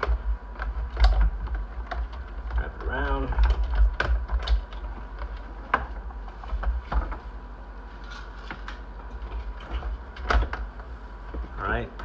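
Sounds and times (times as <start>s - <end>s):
plastic parts clicking and knocking: 0.0s - 7.2s.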